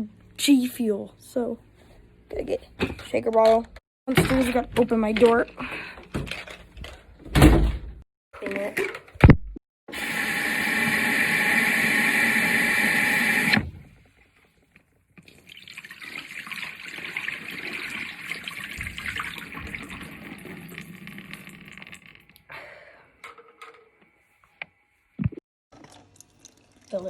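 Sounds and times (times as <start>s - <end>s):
shaker bottle rinsed under water: 15.2s - 22.4s, 25.8s - 27.0s
kitchen tap running into sink: 15.4s - 22.3s.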